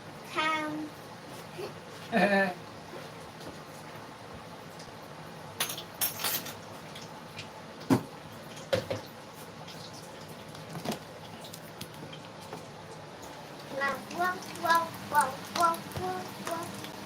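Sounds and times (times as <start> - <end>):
utensils clinking against pots: 5.6 - 6.6
faint steady hiss: 12.9 - 17.0.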